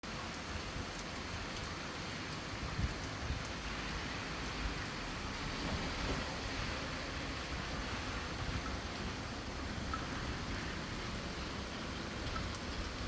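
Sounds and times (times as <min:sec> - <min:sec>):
faint raindrop ticks: 0:00.0 - 0:05.0, 0:09.4 - 0:13.0
steady rain hiss: 0:00.0 - 0:13.0.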